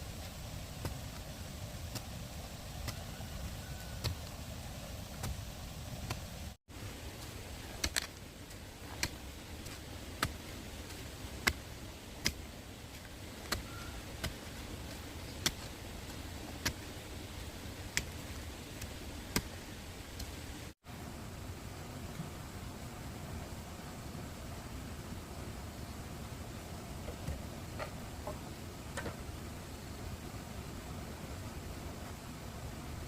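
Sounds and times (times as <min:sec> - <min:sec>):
steady low rumble: 0:00.0 - 0:33.0.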